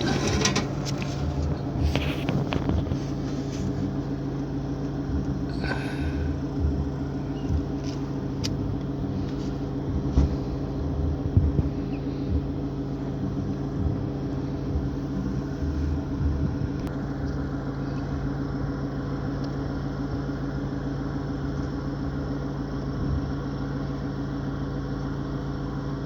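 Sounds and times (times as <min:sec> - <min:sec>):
motor humming: 0:00.0 - 0:18.2.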